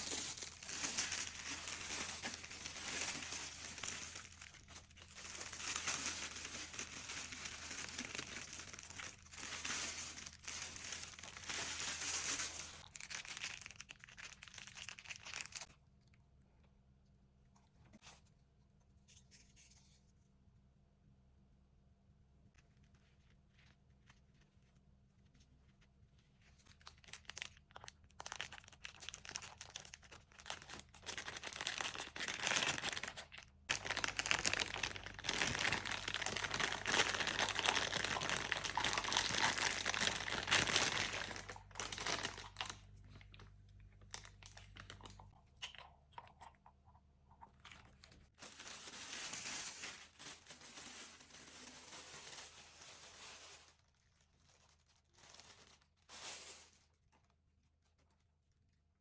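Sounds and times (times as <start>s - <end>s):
packaging tearing: 0.0s - 15.7s, 26.8s - 42.8s
packaging crinkling and rustling: 0.0s - 15.8s, 26.4s - 45.4s, 47.6s - 58.2s.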